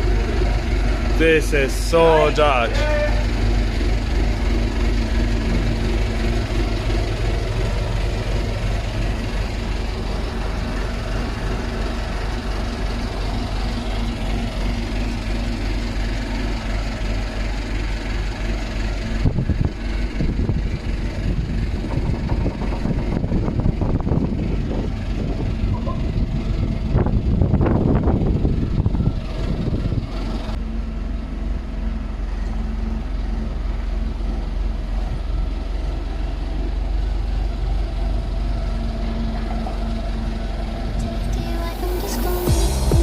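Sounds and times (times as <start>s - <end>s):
engine idling: 0.0s - 43.0s.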